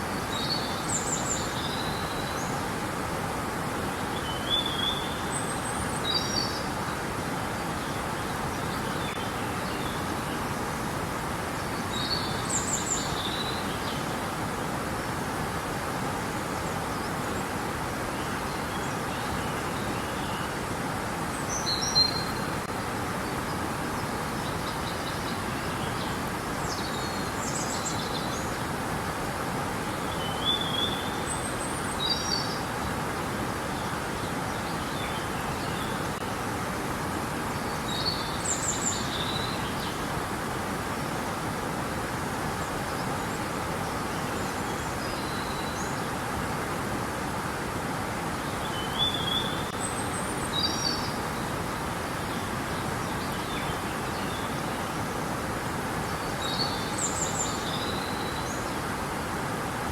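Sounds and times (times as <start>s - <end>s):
river water flowing: 0.0s - 59.9s
songbirds chirping: 47.8s - 59.8s.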